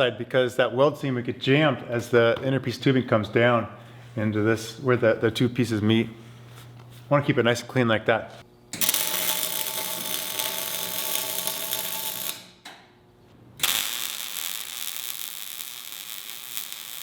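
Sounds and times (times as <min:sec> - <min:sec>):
welding arc crackling: 0:08.8 - 0:12.6, 0:13.6 - 0:17.0.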